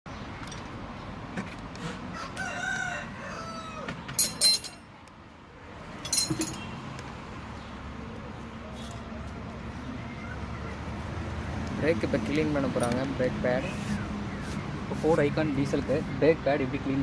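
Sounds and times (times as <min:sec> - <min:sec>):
rooster crowing: 0:02.1 - 0:04.0.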